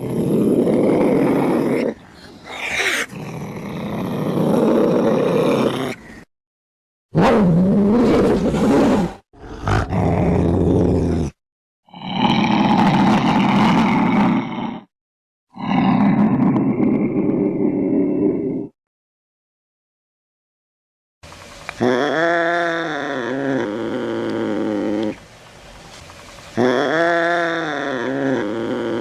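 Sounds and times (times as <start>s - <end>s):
cats growling and roaring: 0.0s - 6.2s, 7.2s - 14.9s, 15.5s - 18.8s, 21.8s - 25.2s, 26.6s - 29.0s.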